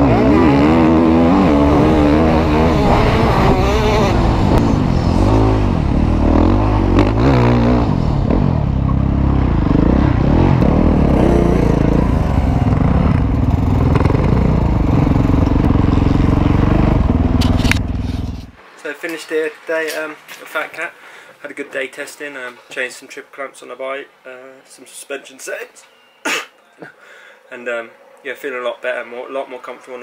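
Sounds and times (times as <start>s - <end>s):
motocross bike engine revving: 0.0s - 18.5s.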